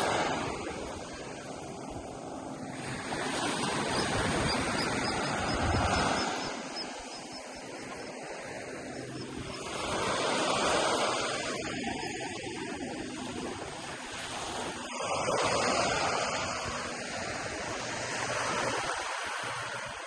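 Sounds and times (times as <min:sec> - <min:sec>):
ocean surf on beach: 0:00.0 - 0:20.0
faint high peeps: 0:03.9 - 0:08.3.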